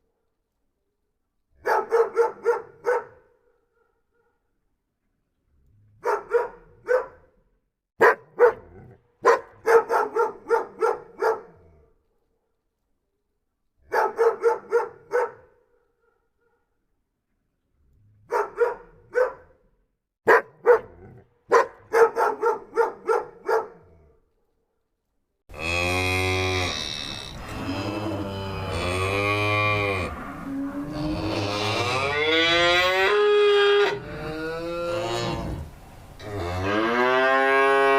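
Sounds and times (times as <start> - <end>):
cow mooing: 25.5 - 37.9.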